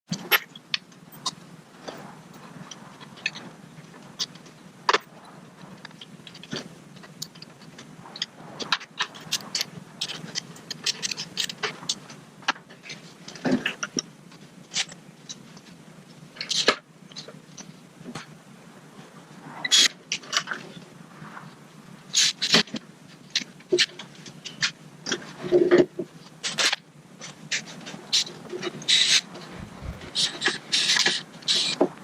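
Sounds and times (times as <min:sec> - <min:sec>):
steady low hum: 0:29.3 - 0:30.4.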